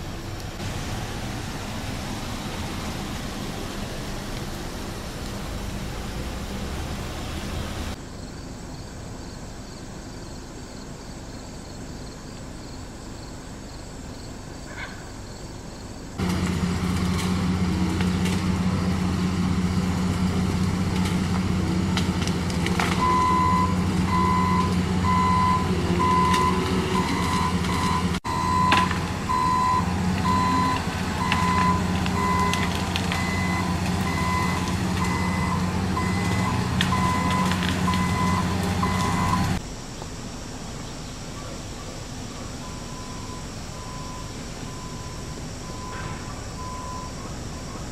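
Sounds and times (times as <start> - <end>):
heavy vehicle engine running: 0.0 - 8.0, 16.2 - 40.9
faint outdoor noise: 0.0 - 47.9
reversing alarm beeps: 23.0 - 39.6, 42.6 - 47.7.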